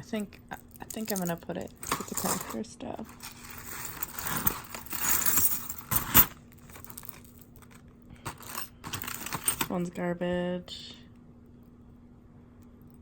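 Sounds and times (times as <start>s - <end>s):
metal jewelry jingling: 0.6s - 9.8s.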